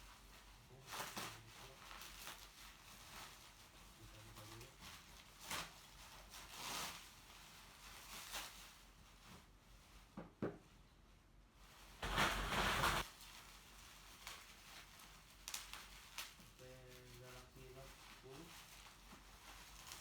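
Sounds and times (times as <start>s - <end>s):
handling noise burst: 12.0s - 13.0s.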